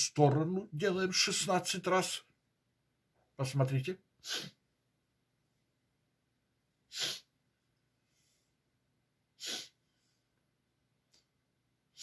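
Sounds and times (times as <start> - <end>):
man's sharp inhalations: 4.2 - 4.6, 6.9 - 7.3, 9.4 - 10.2.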